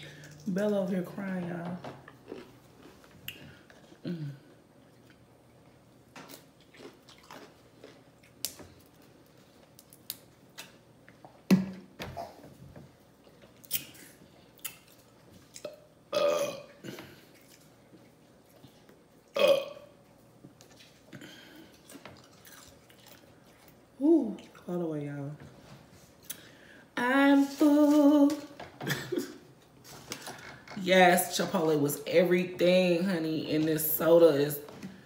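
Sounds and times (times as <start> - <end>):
woman burping: 4.0 - 4.5, 15.6 - 17.2, 19.4 - 19.9.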